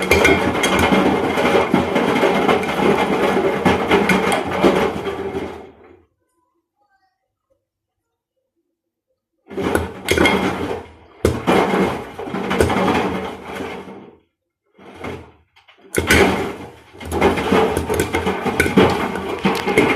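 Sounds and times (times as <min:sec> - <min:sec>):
ice clattering in washing machine: 0:00.0 - 0:06.0, 0:09.5 - 0:14.1, 0:14.8 - 0:19.9
washing machine motor hum: 0:14.8 - 0:19.9.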